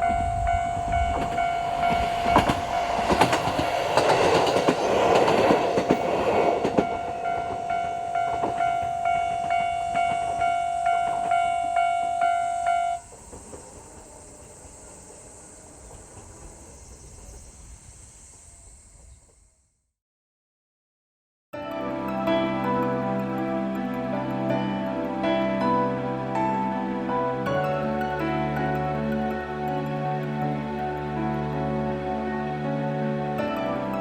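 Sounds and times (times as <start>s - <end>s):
level crossing warning bell: 0.0s - 13.1s
wheels clacking over rail joints: 0.0s - 17.3s.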